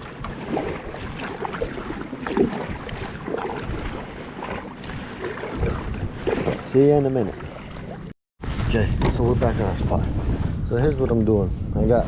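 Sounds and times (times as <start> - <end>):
water splashing around a kayak: 0.0 - 8.2
wind rumbling on microphone: 0.0 - 12.0.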